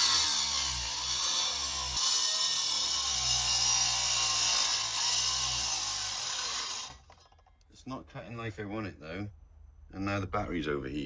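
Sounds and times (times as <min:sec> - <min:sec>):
angle grinder cutting: 0:00.0 - 0:07.4.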